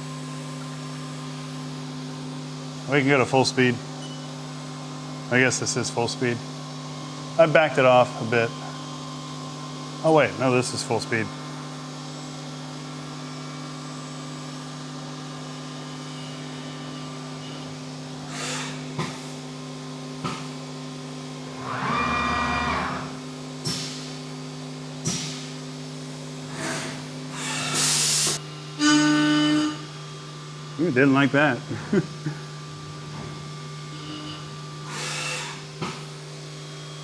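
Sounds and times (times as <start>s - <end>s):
milling machine hum: 0.0s - 23.4s
hiss: 26.6s - 28.4s, 34.9s - 35.6s.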